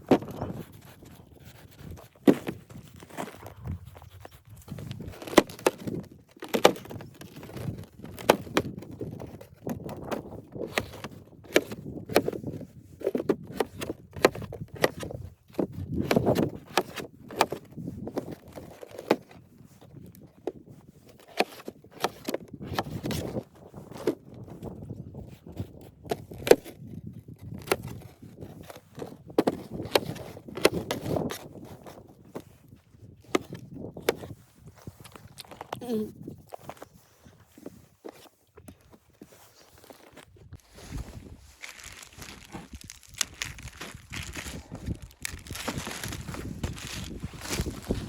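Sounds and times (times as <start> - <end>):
sharp knocks and crunches: 0.0 - 48.0
low rustling: 40.6 - 48.0.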